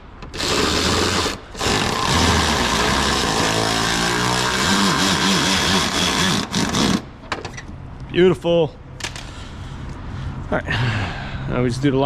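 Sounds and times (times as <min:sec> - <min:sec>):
cordless power driver whirring: 0:00.3 - 0:07.0.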